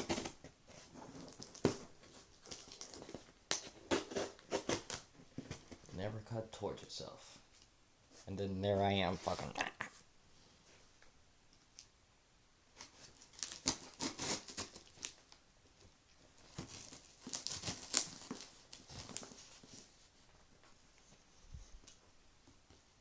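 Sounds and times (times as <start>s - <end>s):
cardboard box packaging tearing: 0.0s - 5.8s, 12.9s - 15.2s, 16.5s - 19.9s.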